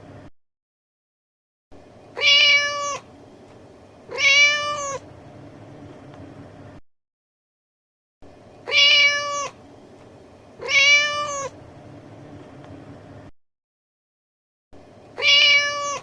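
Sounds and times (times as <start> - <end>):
cat meowing: 2.2 - 3.1, 4.1 - 5.0, 8.6 - 9.6, 10.6 - 11.6, 15.2 - 16.0.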